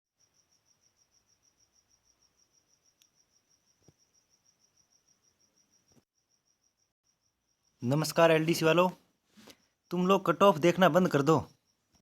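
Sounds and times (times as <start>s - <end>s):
cricket chirping: 0.1s - 12.0s.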